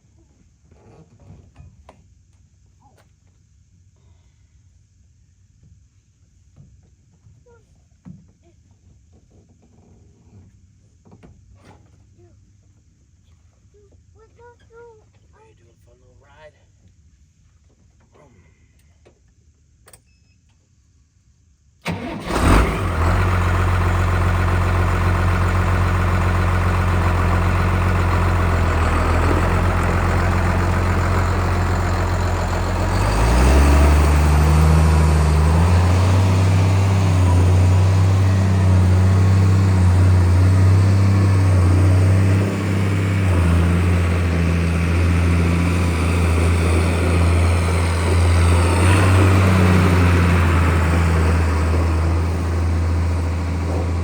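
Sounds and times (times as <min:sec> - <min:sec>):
engine cranking: 0:21.8 - 0:54.0
tractor diesel engine idling: 0:21.8 - 0:54.0
engine revving: 0:21.9 - 0:54.0.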